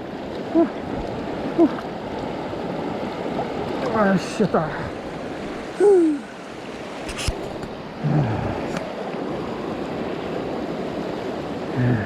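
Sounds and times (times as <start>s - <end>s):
stream water rushing: 0.0s - 12.0s.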